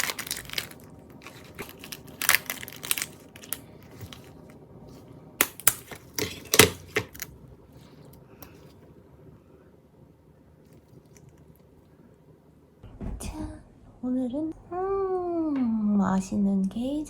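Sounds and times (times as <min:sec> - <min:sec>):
crinkling rustles: 0:00.0 - 0:08.9.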